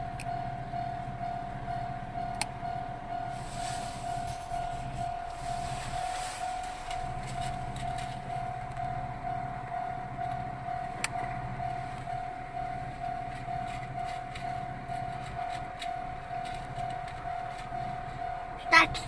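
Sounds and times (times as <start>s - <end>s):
level-crossing warning bell: 0.0s - 19.0s
low steady hum: 0.0s - 19.0s.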